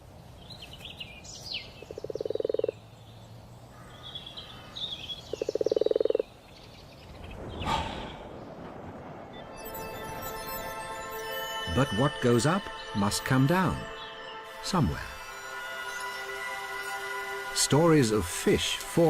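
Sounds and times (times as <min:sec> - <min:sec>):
birds chirping: 0:00.0 - 0:19.0
frog croaking trills: 0:01.8 - 0:02.8, 0:04.9 - 0:06.3.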